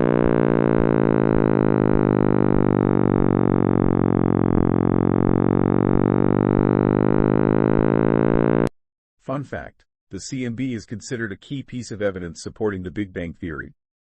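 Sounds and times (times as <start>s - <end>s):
synthesized hum: 0.0s - 8.7s.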